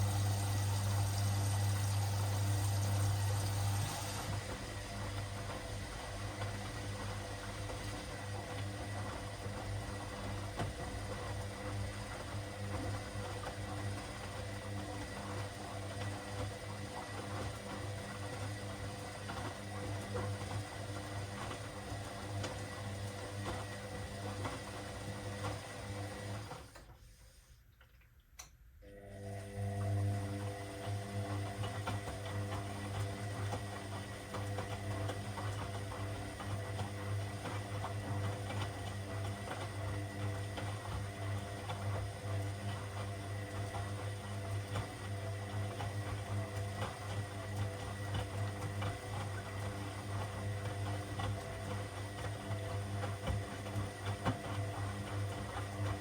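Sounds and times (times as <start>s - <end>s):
water churning in drum: 0.0s - 26.2s, 30.7s - 56.0s
washing machine motor hum: 0.0s - 27.0s, 28.8s - 56.0s.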